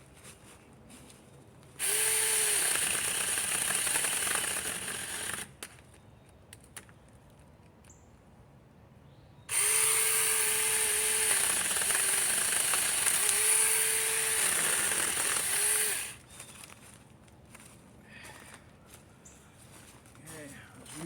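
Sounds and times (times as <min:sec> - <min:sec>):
electric chainsaw whine: 0:01.8 - 0:05.6, 0:09.5 - 0:16.2.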